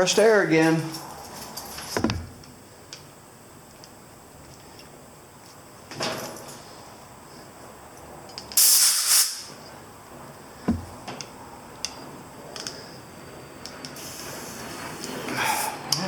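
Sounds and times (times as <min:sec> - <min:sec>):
dull knock: 0:02.0 - 0:02.4, 0:10.7 - 0:11.0
compressed air hiss: 0:08.6 - 0:09.6, 0:14.0 - 0:15.9.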